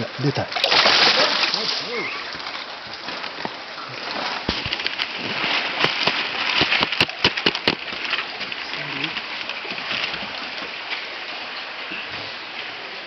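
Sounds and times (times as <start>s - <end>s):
water splashing and sloshing: 0.0s - 13.0s
fish slapping water surface: 0.5s - 10.6s.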